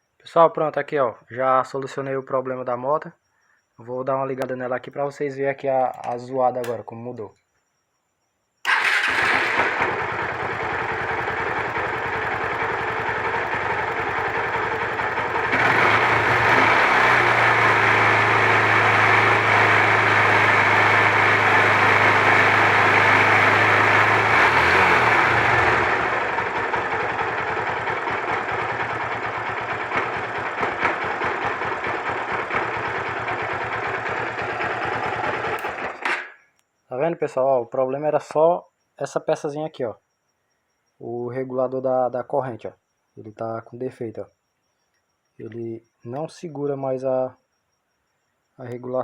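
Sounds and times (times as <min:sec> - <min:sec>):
motorcycle engine idling and revving: 0:08.7 - 0:36.4.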